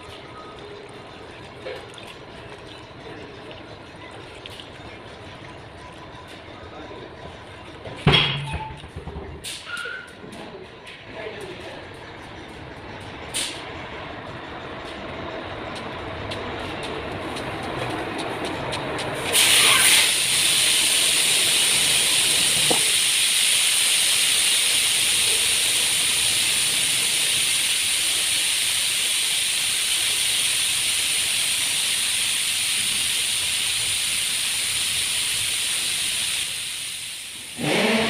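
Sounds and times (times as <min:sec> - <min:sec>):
pressurised jet hissing: 0:19.3 - 0:38.0.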